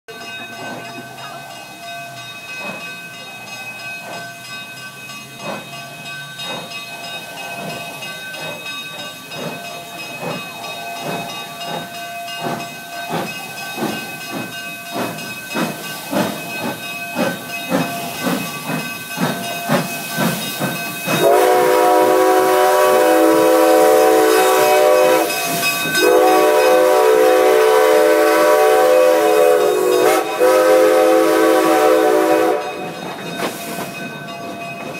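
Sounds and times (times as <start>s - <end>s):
steam locomotive chuffing: 0.1s - 34.9s
steam hissing: 0.2s - 34.9s
steam whistle blasts: 21.2s - 33.0s.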